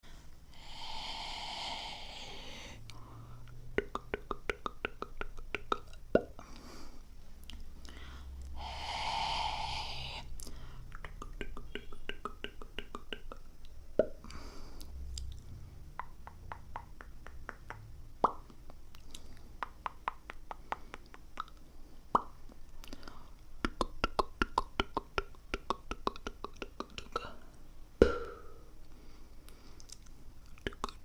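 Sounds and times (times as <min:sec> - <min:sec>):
soft breath: 0:00.0 - 0:03.7, 0:06.4 - 0:07.2, 0:07.8 - 0:11.0, 0:14.2 - 0:15.9, 0:22.8 - 0:23.5, 0:28.4 - 0:30.3
wet mouth clicks and pops: 0:03.5 - 0:06.4, 0:10.4 - 0:15.4, 0:16.0 - 0:23.0, 0:23.6 - 0:27.3, 0:29.8 - 0:31.0.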